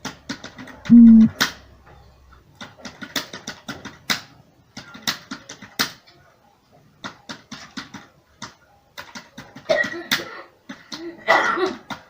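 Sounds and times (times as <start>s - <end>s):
keyboard typing clicks: 0.9s - 1.3s
voice-like sound: 0.9s - 1.3s.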